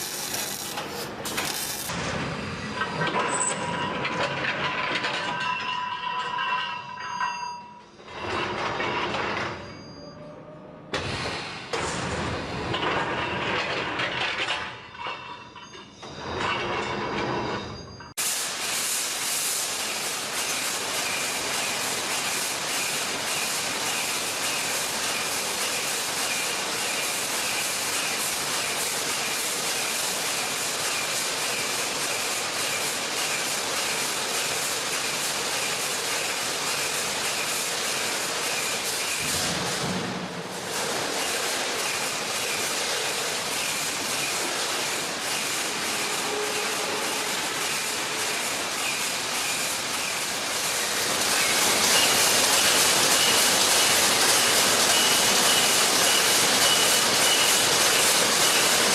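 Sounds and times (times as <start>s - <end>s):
steady hiss: 0.0s - 1.9s
welding machinery running: 0.0s - 3.5s, 18.2s - 58.9s.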